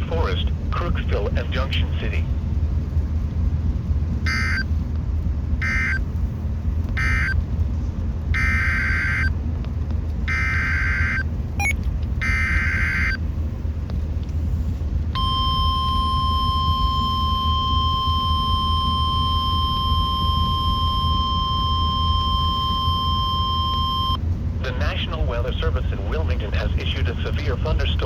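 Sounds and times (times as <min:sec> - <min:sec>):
steady low hum: 0:00.0 - 0:28.0
steady weather radio alarm tone: 0:04.3 - 0:04.7, 0:05.6 - 0:06.0, 0:07.0 - 0:07.4, 0:08.4 - 0:09.4, 0:10.3 - 0:13.2, 0:15.2 - 0:24.2
buzzy data bursts: 0:08.4 - 0:09.3, 0:10.3 - 0:13.2.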